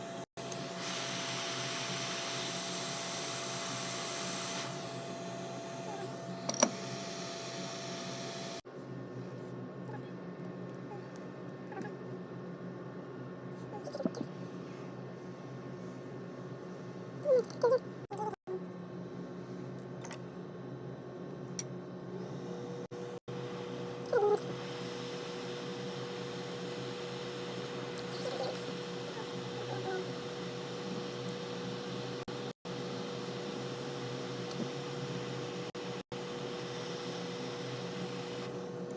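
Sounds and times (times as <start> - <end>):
fan blower hissing: 0.0 - 8.6, 22.9 - 38.9
electrical hum: 0.0 - 38.9.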